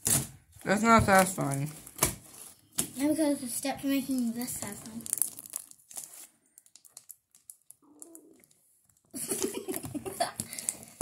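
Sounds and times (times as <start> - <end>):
slime squelching and crackling: 3.7 - 9.1.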